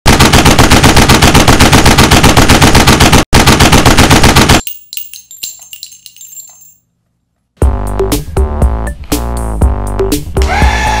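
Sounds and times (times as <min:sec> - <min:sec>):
automatic gunfire: 0:00.1 - 0:04.6
high ringing tones: 0:04.6 - 0:06.9.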